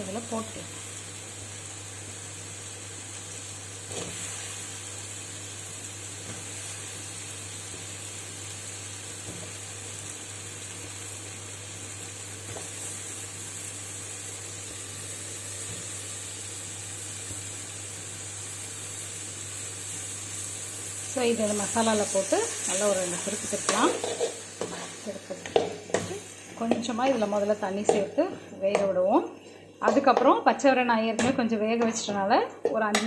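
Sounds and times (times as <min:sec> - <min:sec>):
masala sizzling in hot oil: 0:00.0 - 0:32.3.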